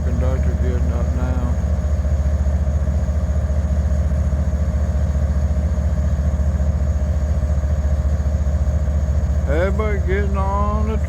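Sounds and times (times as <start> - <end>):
locomotive engine idling: 0.0 - 11.0.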